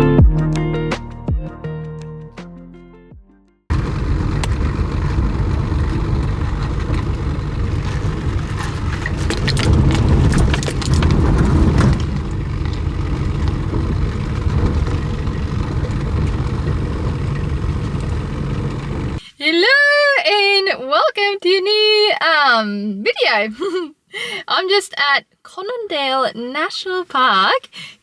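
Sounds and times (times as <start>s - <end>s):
clicks and rattles: 3.7s - 19.2s
engine and tyres rumbling: 3.7s - 19.2s.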